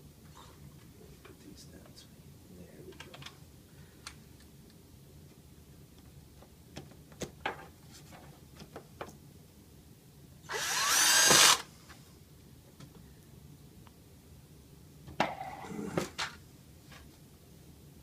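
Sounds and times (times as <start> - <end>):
power screwdriver motor whine: 10.5 - 11.7.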